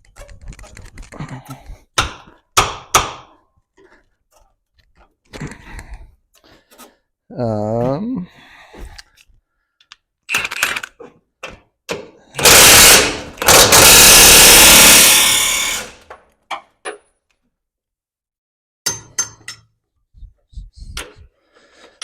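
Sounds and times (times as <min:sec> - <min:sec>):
impact wrench driving bolts: 0:12.4 - 0:16.1.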